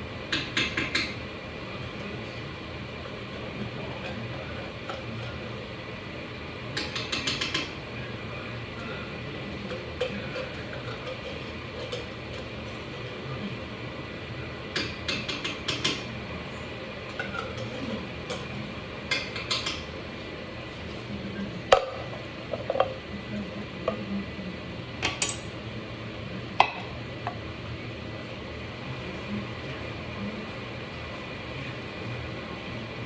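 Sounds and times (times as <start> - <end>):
steady low hum: 0.0 - 33.0
utensils clinking against pots: 6.7 - 7.8, 9.6 - 13.2, 14.7 - 16.1, 17.0 - 20.0, 25.0 - 25.6.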